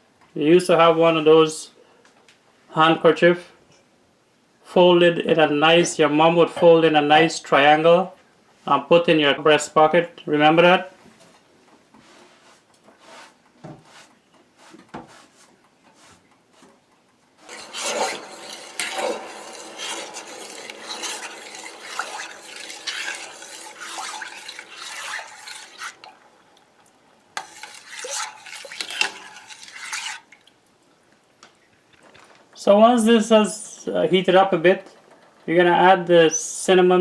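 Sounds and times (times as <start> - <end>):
spoon stirring and scraping a pot: 17.4 - 30.6.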